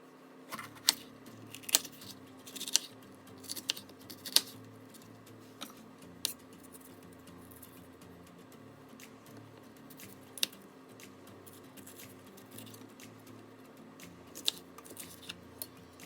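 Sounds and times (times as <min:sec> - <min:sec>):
faint steady hum: 0:00.0 - 0:16.0
food preparation clicks and taps: 0:14.0 - 0:15.7.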